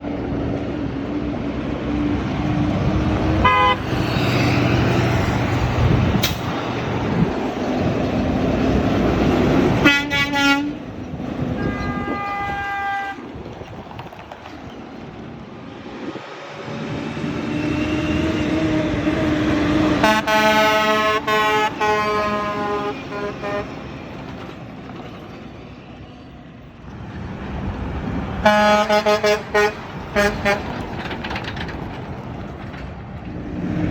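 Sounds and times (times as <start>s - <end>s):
steady road traffic: 0.0s - 33.9s
truck horns blasting: 3.2s - 4.9s, 9.4s - 13.4s, 17.6s - 23.9s, 28.4s - 31.0s.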